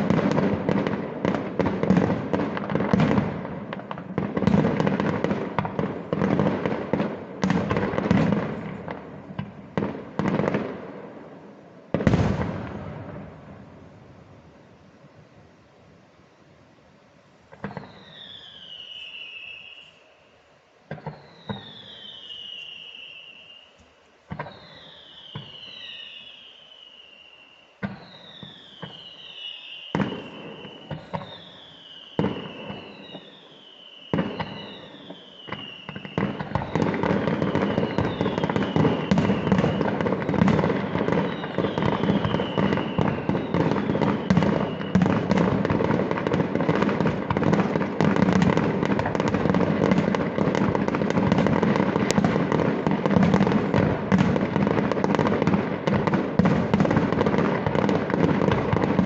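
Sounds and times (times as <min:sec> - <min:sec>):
fireworks barrage bangs and crackle: 0:00.0 - 0:15.4, 0:17.4 - 0:20.2, 0:20.8 - 0:59.0
whistling firework shells: 0:17.5 - 0:59.0.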